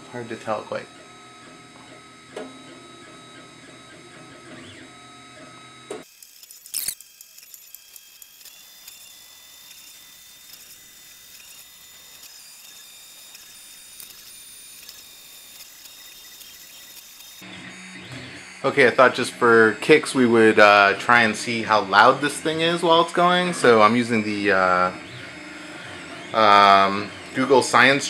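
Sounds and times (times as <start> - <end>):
stepper motors whining: 0.0 - 28.0
high steady whine: 6.5 - 28.0.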